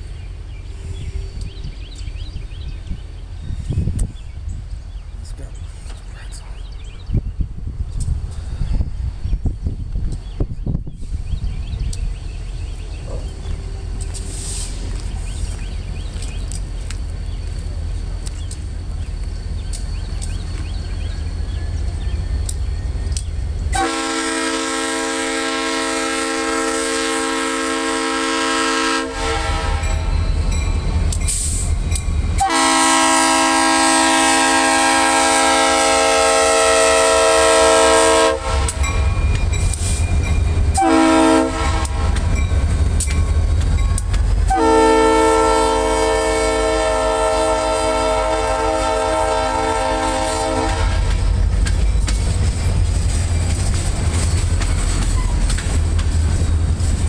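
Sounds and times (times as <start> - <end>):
train rumbling past: 0.0 - 57.0
locomotive air horn blasts: 23.7 - 30.1, 32.4 - 39.1, 40.7 - 42.4, 44.5 - 51.2.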